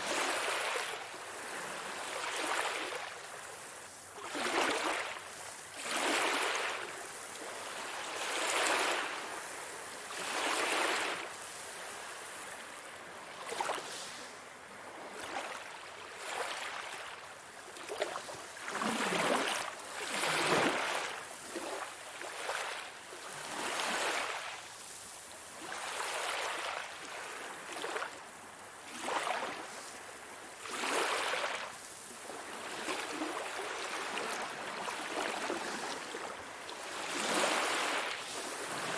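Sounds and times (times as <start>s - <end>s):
sea waves washing in: 28.9s - 38.9s.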